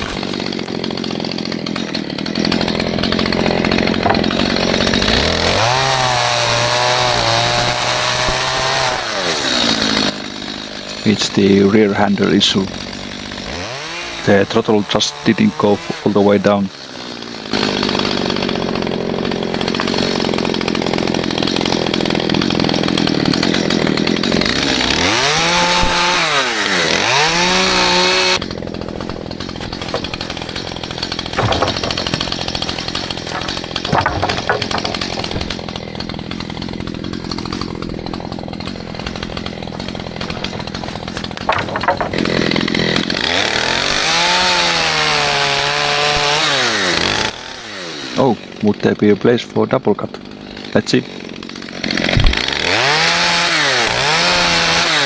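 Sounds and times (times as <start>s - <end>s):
chainsaw running and revving: 0.0s - 55.0s
sharp knocks: 3.1s - 8.8s, 29.0s - 42.8s, 52.0s - 52.9s.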